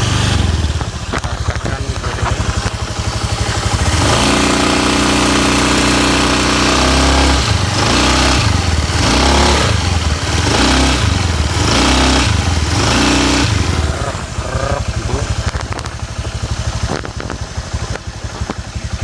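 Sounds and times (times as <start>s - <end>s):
scooter engine revving: 0.0s - 19.0s
rattle under load: 13.8s - 19.0s.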